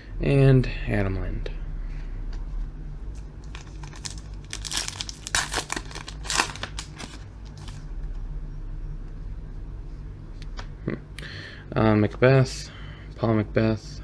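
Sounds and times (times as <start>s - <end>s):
plastic wrapper crinkling and tearing: 3.4s - 7.8s.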